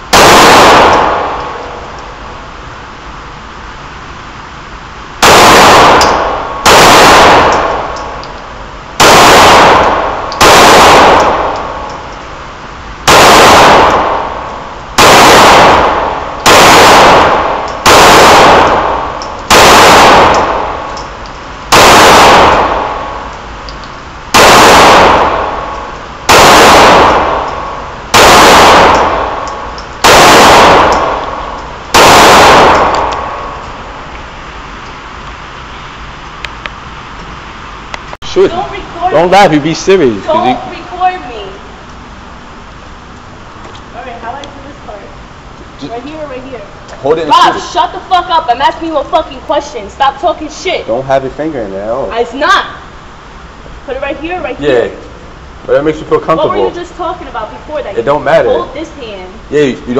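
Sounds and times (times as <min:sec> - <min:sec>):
pistol shots with echo: 0:00.1 - 0:01.6, 0:05.2 - 0:08.0, 0:09.0 - 0:11.9, 0:13.1 - 0:14.4, 0:15.0 - 0:20.9, 0:21.7 - 0:23.2, 0:24.3 - 0:33.6.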